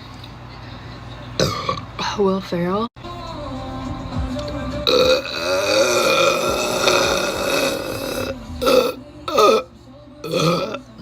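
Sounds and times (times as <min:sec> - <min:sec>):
person burping: 0:01.4 - 0:01.9, 0:04.8 - 0:10.9.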